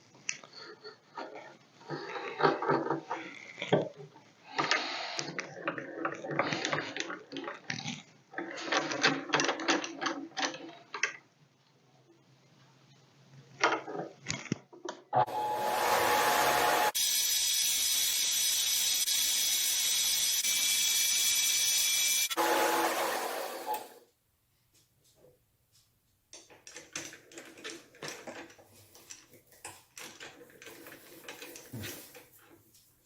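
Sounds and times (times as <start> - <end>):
lathe motor and gear whine: 15.2 - 24.0.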